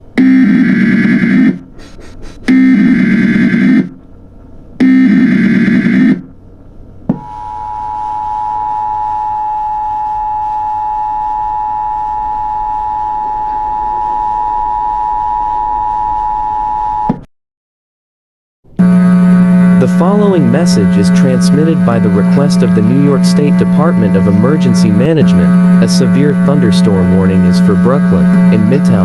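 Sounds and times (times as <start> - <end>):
harsh data tone bursts: 0.2 - 4.0, 19.8 - 29.0
two-tone attention signal: 2.5 - 4.0, 7.2 - 17.2.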